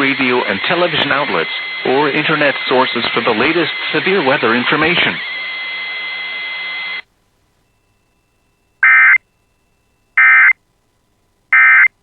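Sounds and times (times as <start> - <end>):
digital data tone bursts: 0.0 - 7.0, 8.8 - 9.2, 10.2 - 10.6, 11.5 - 11.9.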